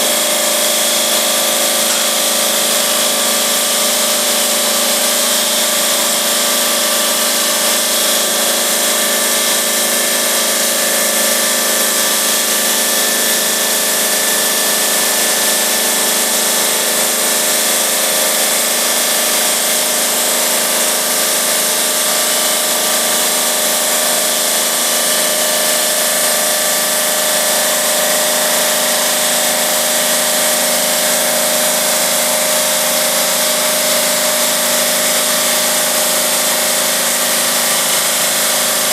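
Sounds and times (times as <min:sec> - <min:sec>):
saw blade whining through stone: 0:00.0 - 0:38.9.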